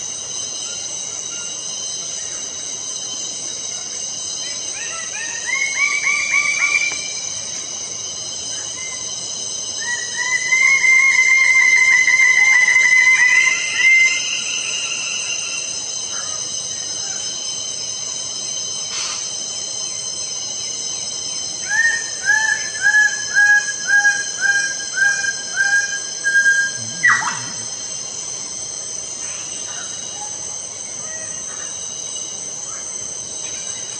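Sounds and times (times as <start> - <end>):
high insect drone: 0.0 - 33.9
birds calling repeated notes: 26.4 - 28.0.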